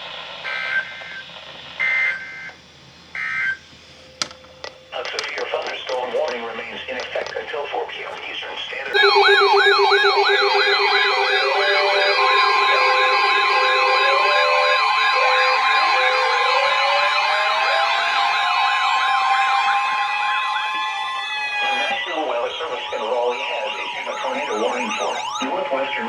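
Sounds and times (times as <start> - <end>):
steady high tone: 8.9 - 20.7
rising siren wail: 8.9 - 22.0
siren fast yelp: 8.9 - 22.0
two-note hi-lo siren: 8.9 - 25.6
siren high warble: 8.9 - 25.7
buzzing tone: 9.0 - 17.9.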